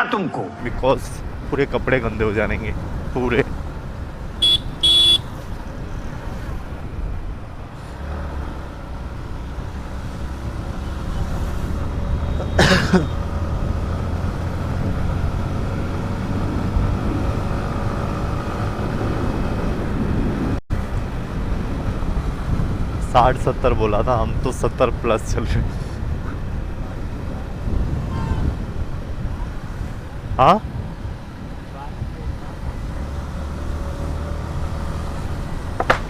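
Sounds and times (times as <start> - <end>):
motorcycle engine accelerating: 7.9 - 20.6, 32.4 - 36.0.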